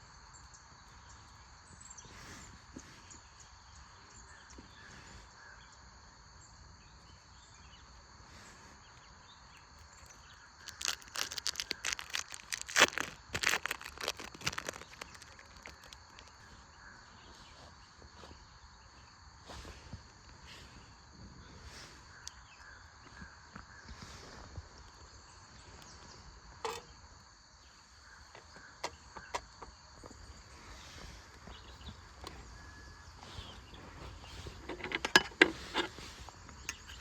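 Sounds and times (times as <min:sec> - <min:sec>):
insects chirring: 0:00.0 - 0:37.0
handling clicks and knocks: 0:34.6 - 0:36.0.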